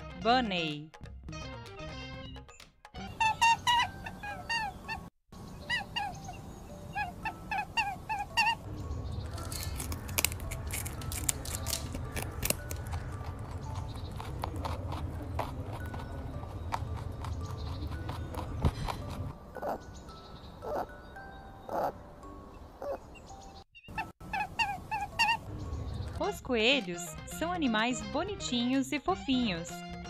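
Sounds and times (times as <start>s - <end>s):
fowl calling: 3.0s - 8.6s, 23.9s - 25.5s.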